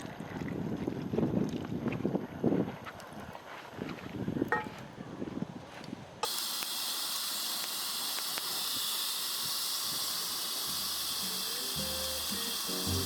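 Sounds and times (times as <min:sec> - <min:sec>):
camp stove hissing: 0:06.2 - 0:13.0.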